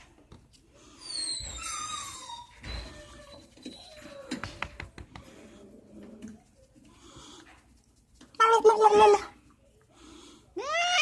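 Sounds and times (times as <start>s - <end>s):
cat meowing: 10.6s - 11.0s.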